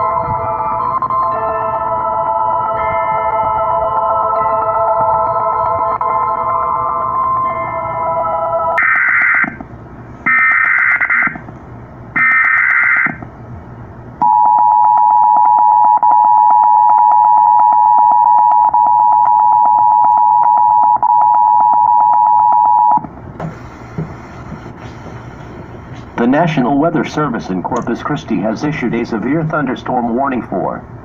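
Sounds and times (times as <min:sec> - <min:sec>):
data tone bursts: 0:14.2 - 0:23.0
two-tone attention signal: 0:14.2 - 0:23.0.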